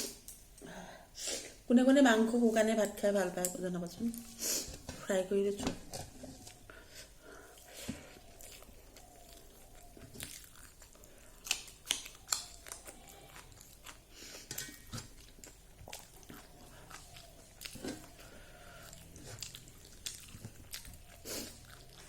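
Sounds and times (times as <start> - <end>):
person chewing wetly: 7.4 - 22.0.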